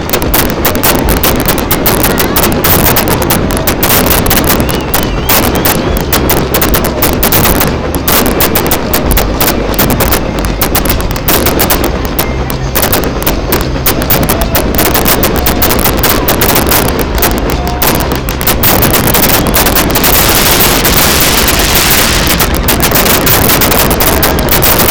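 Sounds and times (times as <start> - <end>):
fireworks bangs and crackles: 0.0 - 24.9.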